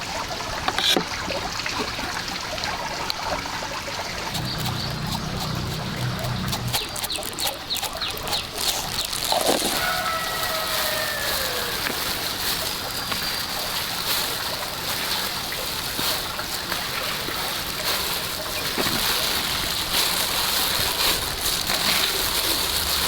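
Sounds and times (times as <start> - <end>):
water splashing and sloshing: 0.6 - 23.0
chicken calling: 9.6 - 12.6.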